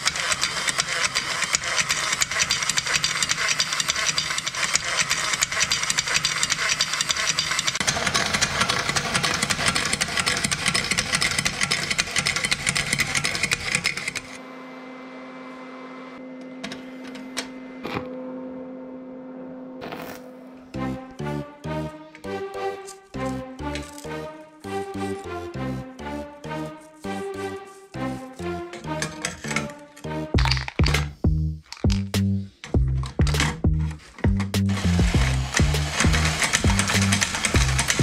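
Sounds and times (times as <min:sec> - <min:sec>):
rapid mechanical clatter: 0:00.0 - 0:14.4, 0:32.6 - 0:38.0.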